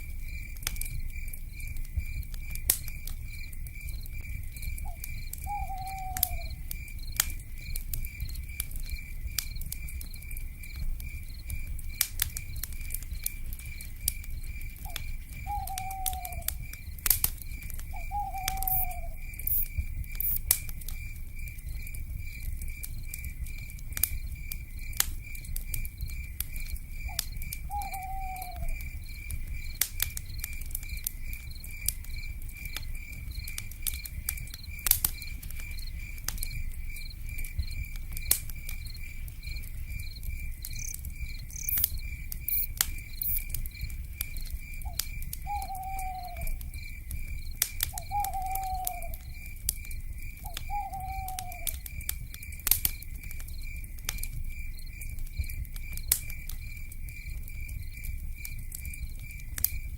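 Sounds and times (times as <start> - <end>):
wood fire crackling and popping: 0.0 - 59.9
insect trilling: 4.8 - 6.6, 15.4 - 16.6, 17.9 - 20.4, 40.8 - 43.5, 44.8 - 46.9, 47.9 - 49.2, 50.4 - 51.8
owl hooting: 4.8 - 6.6, 15.4 - 16.5, 17.9 - 19.2, 27.1 - 28.8, 44.8 - 46.6, 48.0 - 49.2, 50.4 - 51.7.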